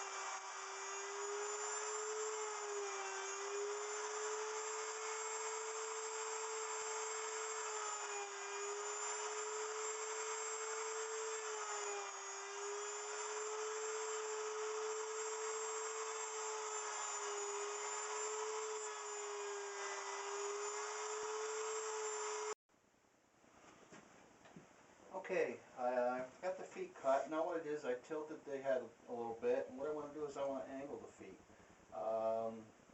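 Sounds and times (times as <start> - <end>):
wood router whining: 0.0 - 22.6.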